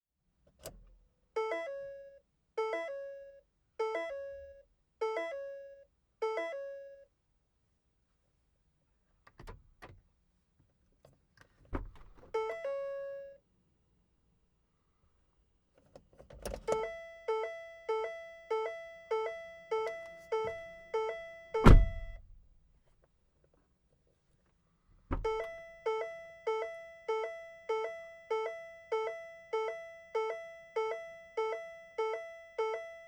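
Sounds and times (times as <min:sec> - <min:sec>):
dull thuds: 0:11.8 - 0:12.2, 0:21.6 - 0:22.4, 0:25.1 - 0:25.5
two-note car warning chime: 0:16.8 - 0:22.2, 0:25.2 - 0:33.0.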